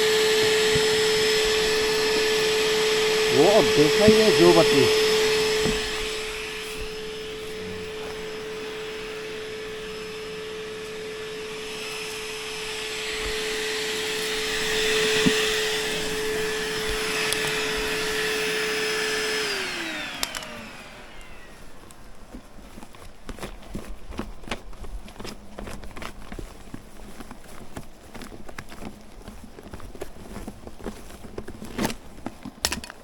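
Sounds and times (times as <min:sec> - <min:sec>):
vacuum cleaner motor running: 0:00.0 - 0:23.0.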